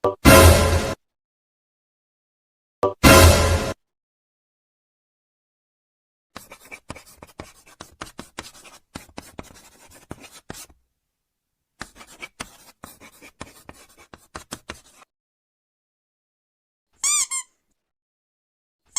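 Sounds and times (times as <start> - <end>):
pen scratching on paper: 6.4 - 10.8, 11.8 - 15.1.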